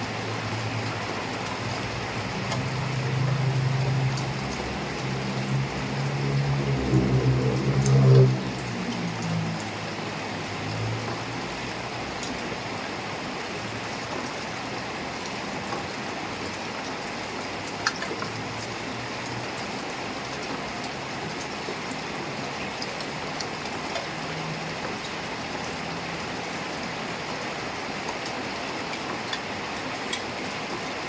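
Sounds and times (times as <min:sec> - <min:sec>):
heavy rain: 0:00.0 - 0:31.0
low hum: 0:02.6 - 0:10.0.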